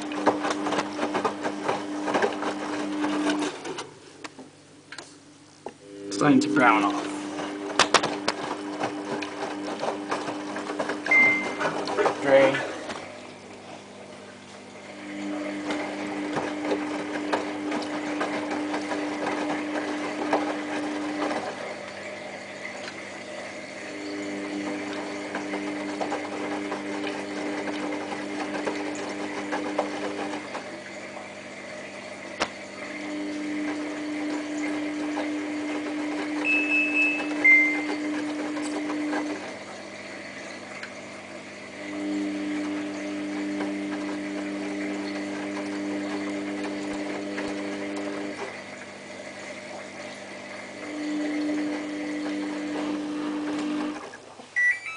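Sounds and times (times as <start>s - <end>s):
washing machine drum turning: 0.0s - 4.0s, 6.1s - 13.8s, 15.1s - 41.1s, 41.9s - 48.9s
wet load sloshing: 6.7s - 31.7s
high-pitched tones: 54.6s - 54.9s.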